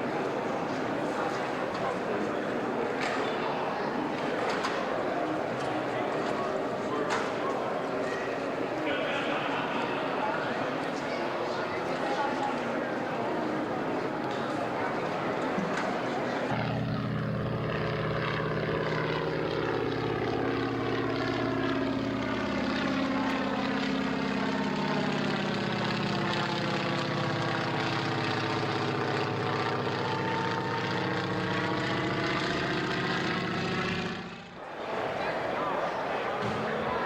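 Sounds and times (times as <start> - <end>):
propeller airplane engine drone: 0.0 - 35.5.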